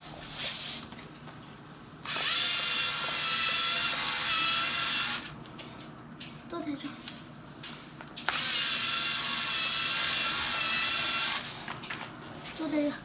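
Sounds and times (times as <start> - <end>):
small electric motor whining: 2.0 - 5.3, 8.3 - 11.7.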